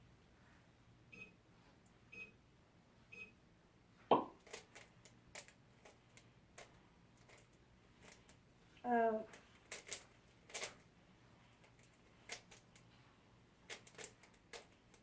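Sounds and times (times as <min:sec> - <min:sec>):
short electronic timer beeps: 0:01.1 - 0:01.4, 0:02.1 - 0:02.4, 0:03.1 - 0:03.3.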